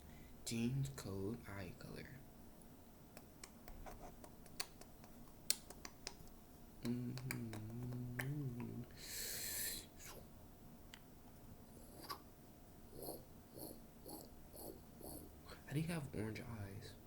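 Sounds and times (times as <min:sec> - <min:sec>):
low voice humming: 0:06.8 - 0:10.3, 0:12.9 - 0:15.6.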